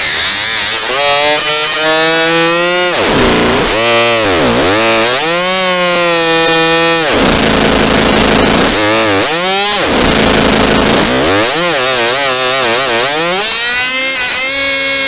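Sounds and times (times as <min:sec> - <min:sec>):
walkie-talkie static: 0:07.1 - 0:09.0, 0:09.8 - 0:11.3.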